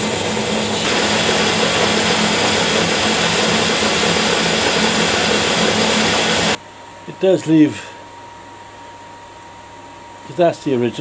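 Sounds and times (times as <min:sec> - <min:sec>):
motor hum: 0:00.0 - 0:06.6.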